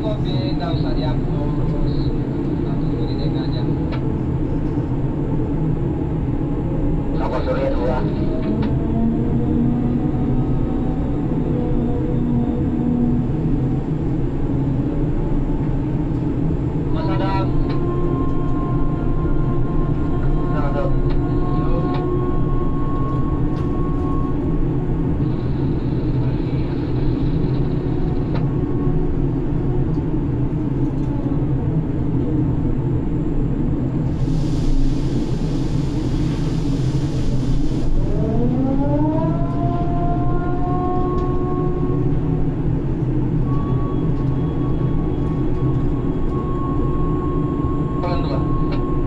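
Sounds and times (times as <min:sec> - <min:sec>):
hiss: 0:34.2 - 0:38.0
motor whine rising in pitch: 0:37.9 - 0:42.5.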